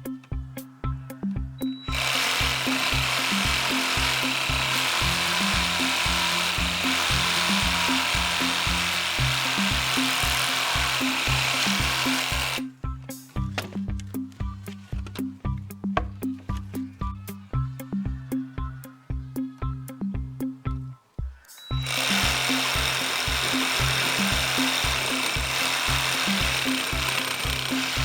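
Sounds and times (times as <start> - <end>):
music with steady beat: 0.0 - 28.0
reciprocating saw cutting wood: 1.9 - 12.7, 21.8 - 28.0.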